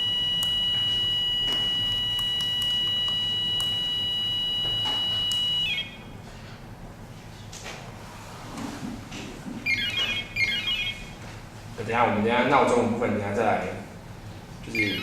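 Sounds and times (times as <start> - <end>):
alarm clock buzzer tone: 0.0 - 6.0, 9.7 - 11.1, 14.8 - 15.0.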